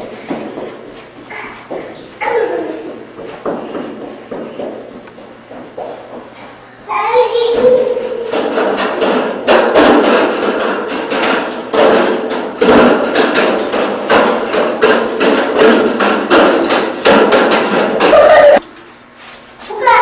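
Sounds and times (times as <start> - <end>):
child banging sharp ringing knocks: 7.6 - 18.6.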